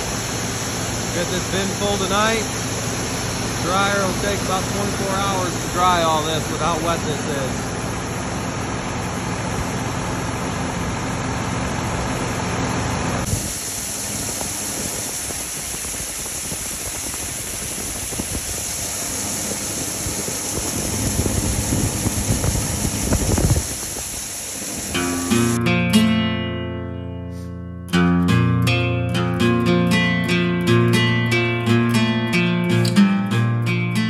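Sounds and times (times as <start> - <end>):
steady hiss: 0.0 - 7.8, 13.2 - 25.6
grain machinery running: 0.0 - 26.0.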